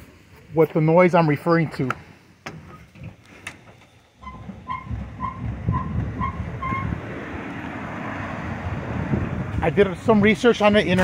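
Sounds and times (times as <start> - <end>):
low rumble from rocking: 0.0 - 11.0
suspension squeaking: 2.5 - 7.6.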